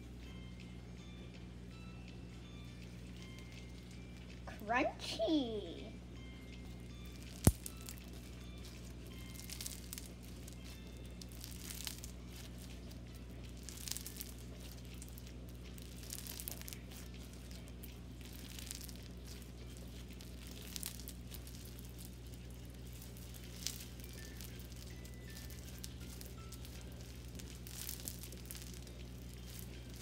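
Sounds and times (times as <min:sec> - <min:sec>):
crunchy slime squished by hand: 0:06.8 - 0:30.0.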